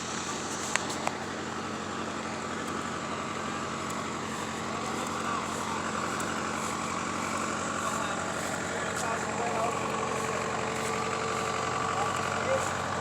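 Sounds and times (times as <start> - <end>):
skid steer engine running: 0.0 - 13.0.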